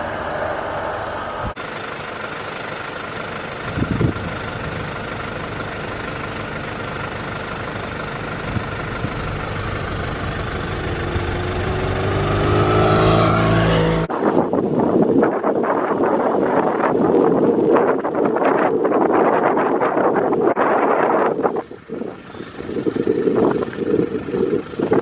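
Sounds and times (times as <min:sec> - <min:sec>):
motorcycle engine revving: 0:07.6 - 0:14.1.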